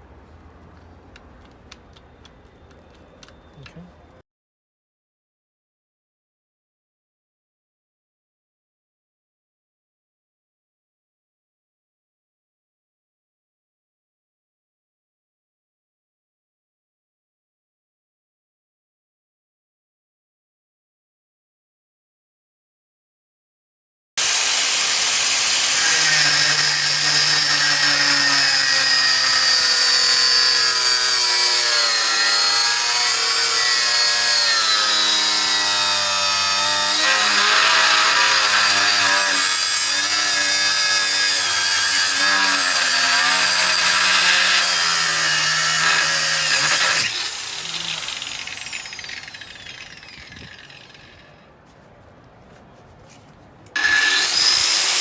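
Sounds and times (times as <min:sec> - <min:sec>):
angle grinder cutting metal: 0:24.2 - 0:51.4, 0:53.8 - 0:55.0
grinder winding down whine: 0:46.5 - 0:51.4, 0:53.8 - 0:55.0.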